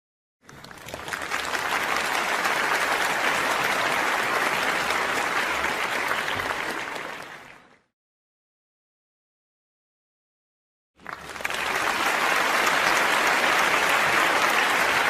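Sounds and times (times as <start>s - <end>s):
audience applause: 0.4s - 7.9s, 11.0s - 15.0s.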